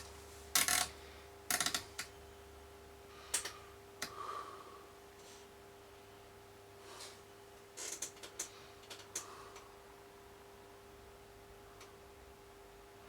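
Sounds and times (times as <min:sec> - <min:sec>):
small clicks and rattles: 0:00.0 - 0:02.1, 0:07.8 - 0:09.3
faint steady hum: 0:00.0 - 0:13.0.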